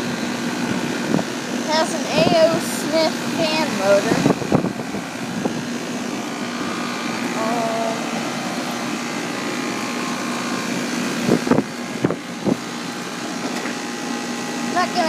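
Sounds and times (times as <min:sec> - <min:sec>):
air conditioner unit running: 0:00.0 - 0:15.0.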